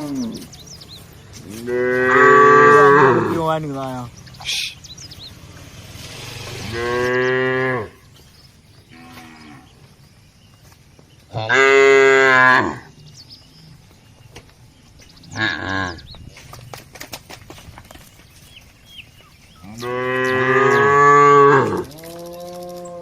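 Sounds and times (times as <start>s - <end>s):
cows mooing: 0.0s - 0.6s, 1.4s - 3.8s, 4.6s - 8.1s, 8.9s - 9.9s, 11.3s - 13.0s, 15.3s - 16.1s, 19.3s - 23.0s.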